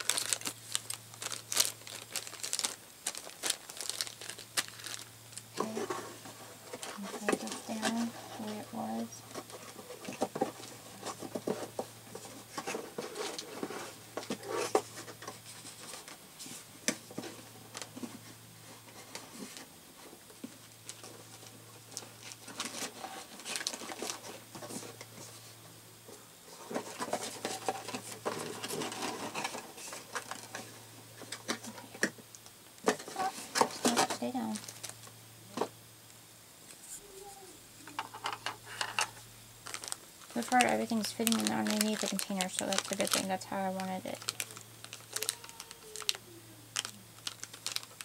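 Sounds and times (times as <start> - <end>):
plastic toy pieces being handled: 0.0 - 6.1, 37.9 - 46.2, 46.8 - 48.0
plastic bags crinkling: 0.0 - 16.1, 20.8 - 25.0, 26.6 - 35.1, 38.8 - 48.0
faint low hum: 0.0 - 48.0.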